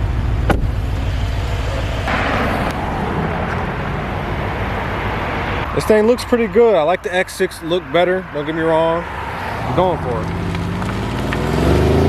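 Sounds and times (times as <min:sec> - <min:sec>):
car exhaust droning: 0:00.0 - 0:12.0
rush of higher noise: 0:00.4 - 0:06.2.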